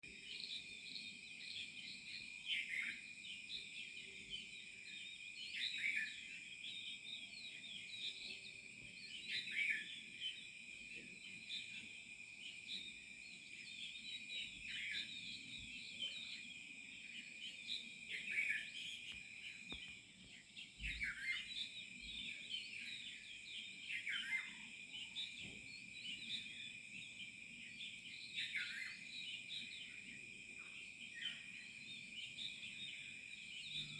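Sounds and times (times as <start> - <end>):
insect drone: 0.1 - 33.9
birds chirping and whistling: 20.6 - 26.7, 27.9 - 29.9.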